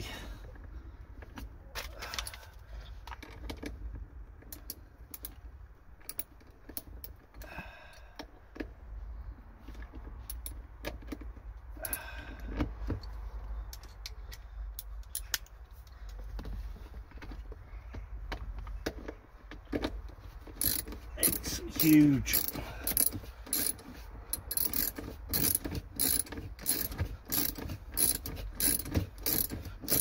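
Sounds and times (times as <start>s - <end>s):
metal tools clinking: 20.6s - 23.8s.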